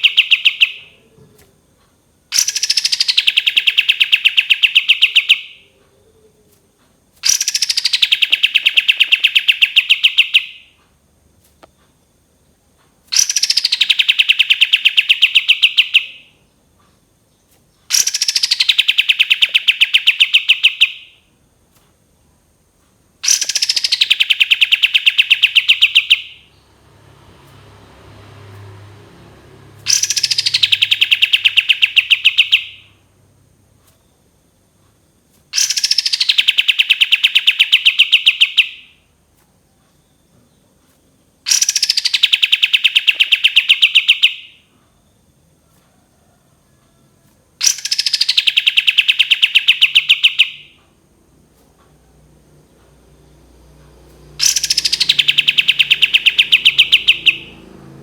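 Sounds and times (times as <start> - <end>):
bird whistling and rattling song: 0.0 - 1.0, 2.3 - 5.7, 7.2 - 10.7, 13.1 - 16.3, 17.9 - 21.2, 23.2 - 26.5, 29.9 - 33.0, 35.5 - 38.9, 41.5 - 44.6, 47.6 - 50.8, 54.4 - 57.6.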